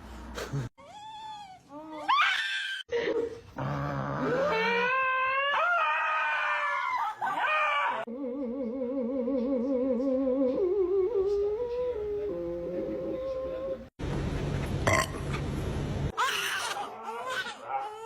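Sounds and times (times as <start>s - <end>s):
dog howling: 4.2s - 8.1s.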